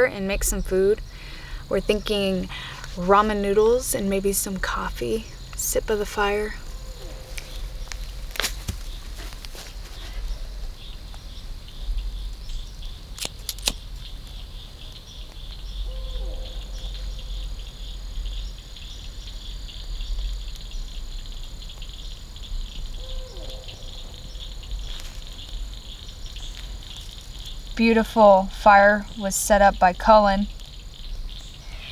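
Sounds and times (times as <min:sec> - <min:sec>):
higher steady insect trill: 0:00.0 - 0:31.9
insects trilling: 0:00.0 - 0:31.9
sharp clicks: 0:13.2 - 0:14.4.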